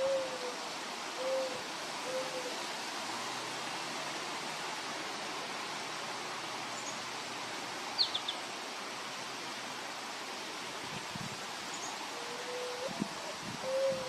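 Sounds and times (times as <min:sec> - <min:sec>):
outdoor background hiss: 0:00.0 - 0:14.0
small bird chirping: 0:08.0 - 0:08.4.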